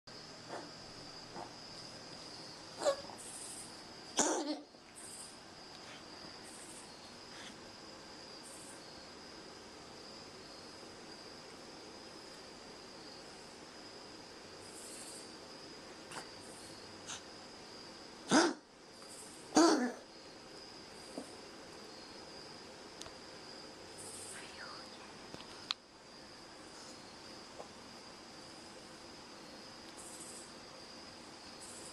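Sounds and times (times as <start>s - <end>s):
steady high-pitched whine: 0.1s - 31.9s
cat coughing: 4.2s - 4.7s, 18.3s - 18.6s, 19.6s - 20.0s.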